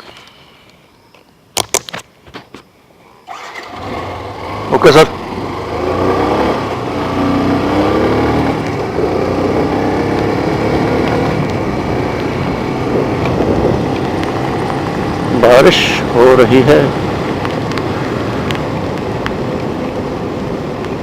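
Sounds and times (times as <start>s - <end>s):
vehicle engine revving: 3.3s - 17.5s.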